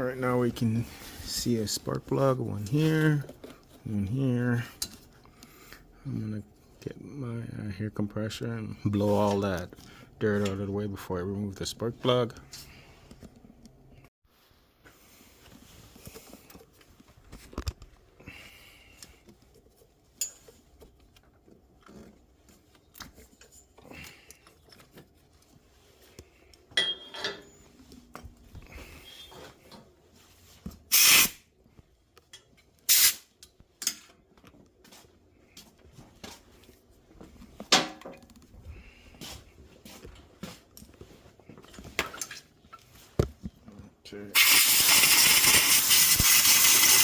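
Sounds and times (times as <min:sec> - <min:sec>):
compressed-air blow gun blasts: 0:30.9 - 0:31.4, 0:44.4 - 0:47.0.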